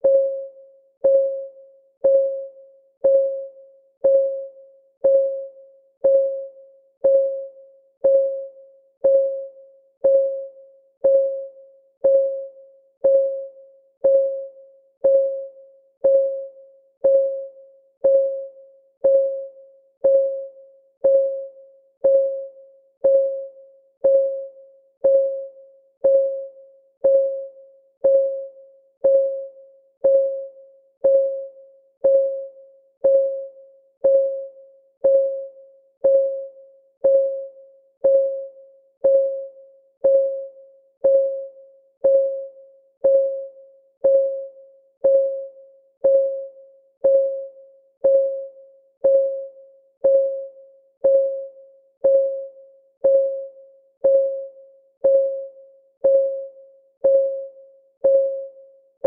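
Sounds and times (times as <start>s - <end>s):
countdown timer ticking: 1.0s - 58.6s.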